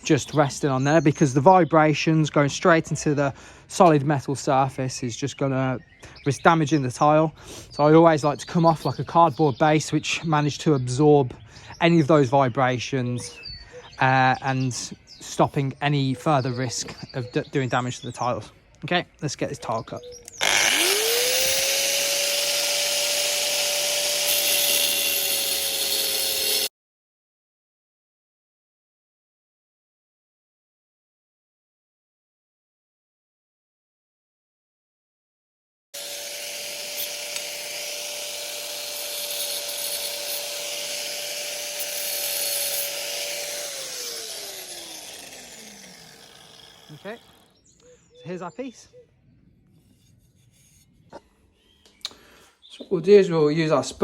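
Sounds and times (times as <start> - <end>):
angle grinder whining: 20.2 - 26.7, 36.0 - 47.8.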